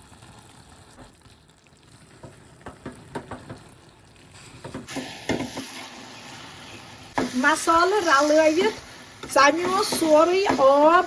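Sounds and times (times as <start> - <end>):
leaves sizzling in oil: 2.0 - 11.0
spoon scraping in a pan: 4.9 - 11.0.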